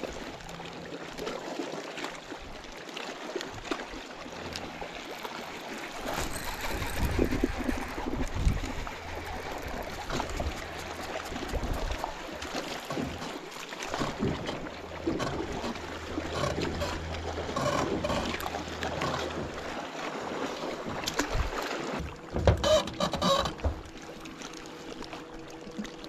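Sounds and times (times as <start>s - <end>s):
boat motor humming: 0.0s - 26.0s
water noise: 0.0s - 26.0s
wind noise: 6.2s - 10.6s.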